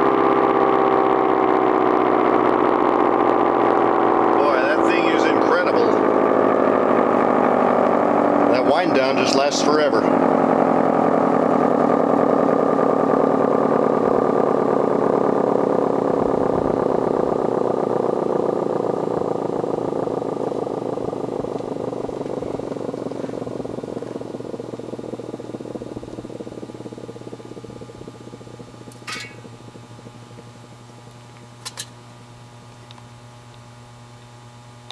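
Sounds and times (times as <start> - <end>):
air-raid siren winding down: 0.0 - 30.8
low steady hum: 0.0 - 34.9.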